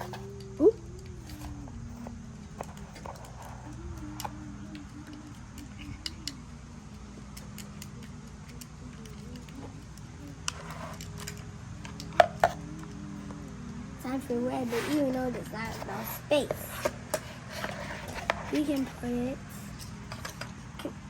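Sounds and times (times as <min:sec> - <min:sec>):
steady low hum: 0:00.0 - 0:21.0
plastic scoops clicking on containers: 0:07.3 - 0:13.0.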